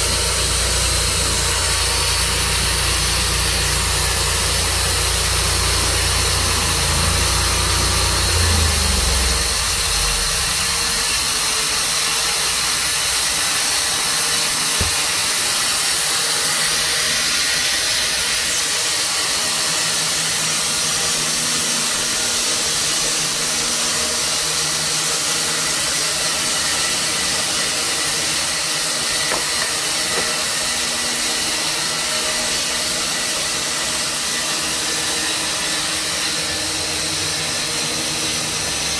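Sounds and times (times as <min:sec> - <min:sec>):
engine low rumble: 0:00.0 - 0:13.2
sawmill sawing log: 0:00.0 - 0:38.9.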